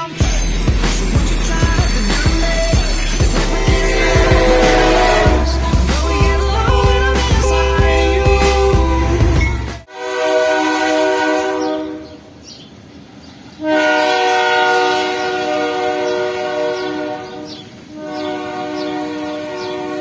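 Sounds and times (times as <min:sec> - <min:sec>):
locomotive air horn chord: 0:00.0 - 0:12.2, 0:13.6 - 0:20.0.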